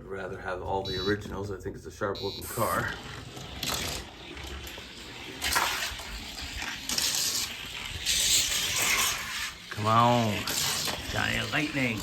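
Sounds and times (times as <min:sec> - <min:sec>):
toy car wheels rushing on track: 0:02.6 - 0:12.0.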